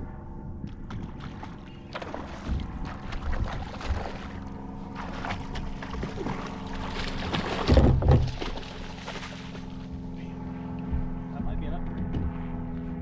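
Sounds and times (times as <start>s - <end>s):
water sloshing: 0.9s - 10.2s
knocks and rustles: 7.2s - 9.6s.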